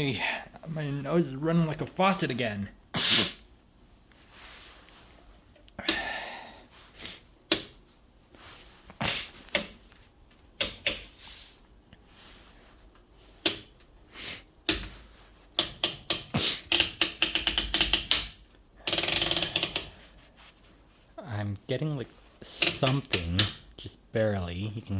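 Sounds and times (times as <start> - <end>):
rotary switch clicks: 9.5 - 9.8, 10.6 - 11.1, 15.6 - 19.9.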